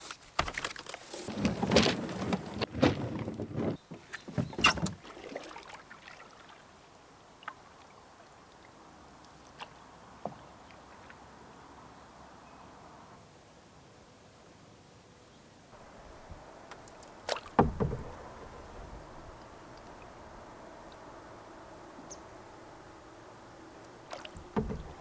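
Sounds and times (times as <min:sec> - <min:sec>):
paddle splashing: 0:00.0 - 0:11.4, 0:15.8 - 0:25.0
paddle knocking against hull: 0:16.2 - 0:20.1, 0:24.0 - 0:25.0.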